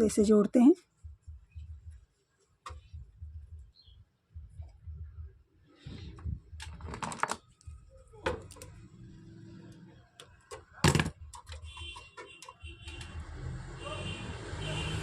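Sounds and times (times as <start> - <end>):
clicks and knocks from handling wires: 6.6 - 8.8, 10.2 - 13.2.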